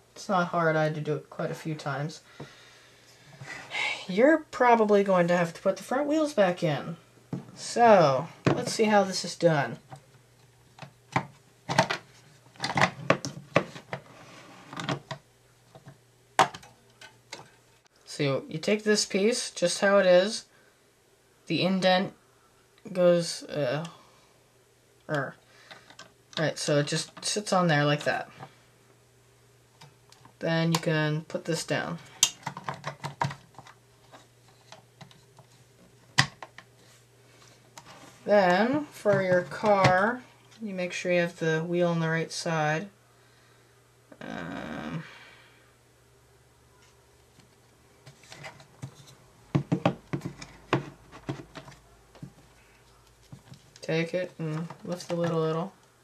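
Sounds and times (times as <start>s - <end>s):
plastic parts clicking: 32.2s - 35.2s.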